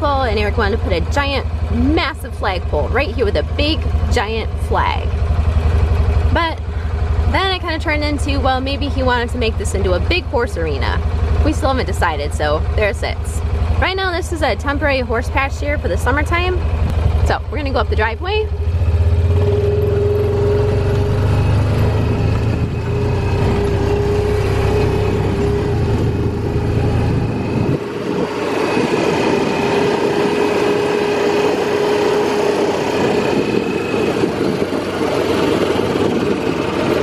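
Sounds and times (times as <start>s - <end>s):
low rumble: 0.0s - 37.0s
vehicle engine whine: 0.0s - 37.0s.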